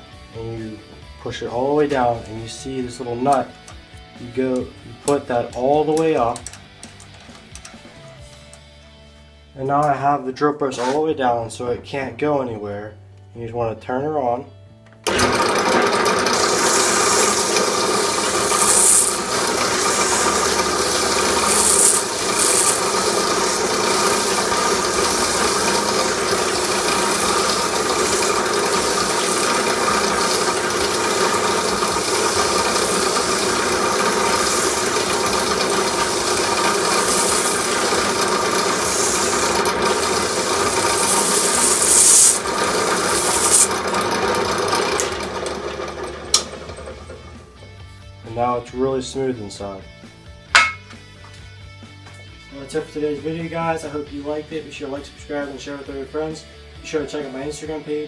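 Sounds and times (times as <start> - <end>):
drill press running: 15.0 - 47.6
wood rasping on abrasive: 15.8 - 45.0.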